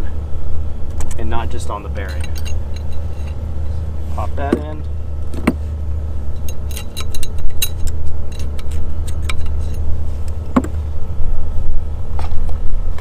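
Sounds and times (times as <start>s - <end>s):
steady low hum: 0.0s - 13.0s
metal parts clinking: 2.0s - 3.4s, 6.4s - 9.9s.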